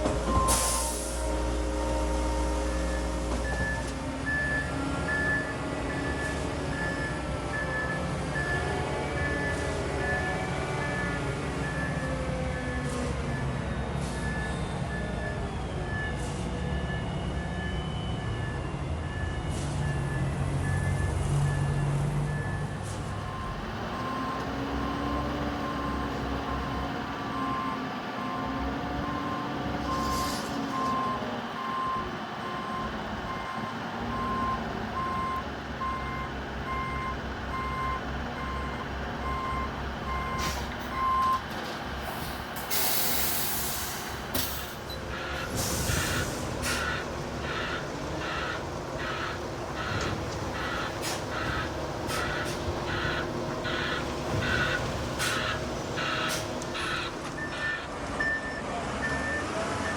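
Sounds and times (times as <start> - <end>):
reversing alarm beeping: 0.2 - 41.5, 44.8 - 59.9
air brake hiss: 0.5 - 1.3, 29.9 - 30.6, 40.4 - 40.8, 42.1 - 44.8, 45.5 - 47.0
diesel engine running: 19.1 - 59.9
higher-pitched reversing alarm: 50.6 - 58.5.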